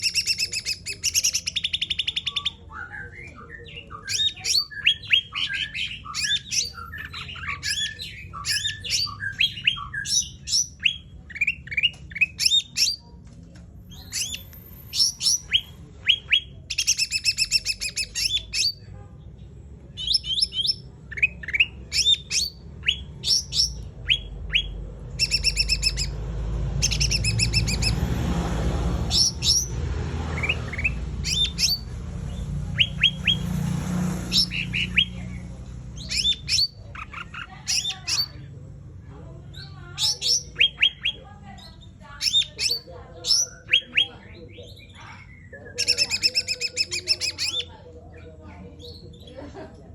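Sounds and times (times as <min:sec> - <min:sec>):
songbird singing chirps and trills: 0:00.0 - 0:49.9.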